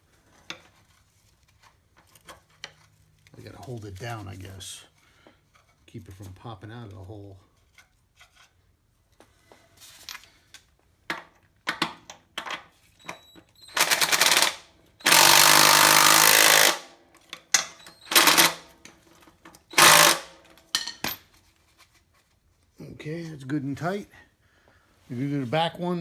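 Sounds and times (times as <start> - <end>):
impact wrench hammering: 13.8 - 16.9, 18.0 - 18.6, 19.7 - 21.1.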